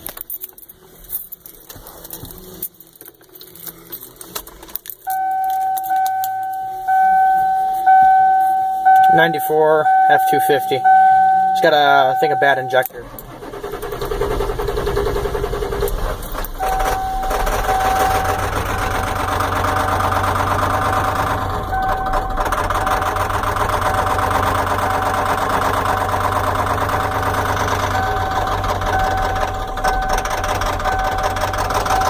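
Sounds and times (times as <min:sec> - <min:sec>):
diesel engine idling with clatter: 0:00.0 - 0:32.0
thin steady tone: 0:05.1 - 0:12.9, 0:16.6 - 0:19.8.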